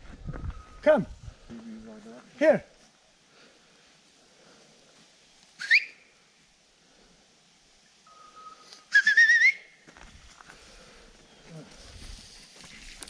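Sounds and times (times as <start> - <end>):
person whistling recall calls: 5.6 - 6.1, 8.1 - 9.8.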